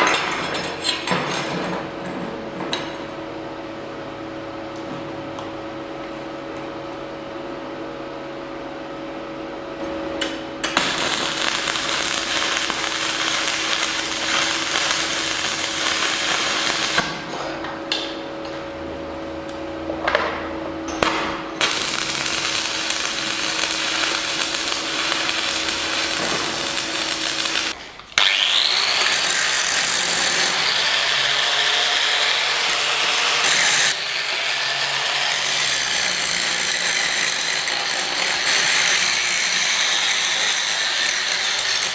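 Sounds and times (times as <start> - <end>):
power tool running on metal: 10.2 - 18.0, 21.4 - 41.9.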